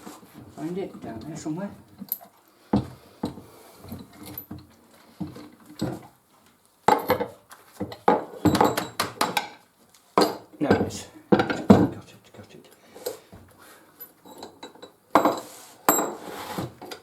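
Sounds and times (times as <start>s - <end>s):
small hard parts clinking: 6.9s - 9.6s.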